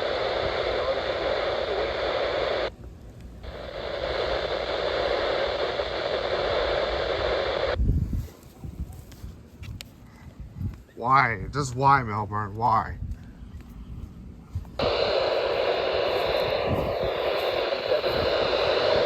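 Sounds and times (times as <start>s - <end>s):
radio static hiss: 0.0s - 2.8s, 3.4s - 7.8s, 14.8s - 19.0s.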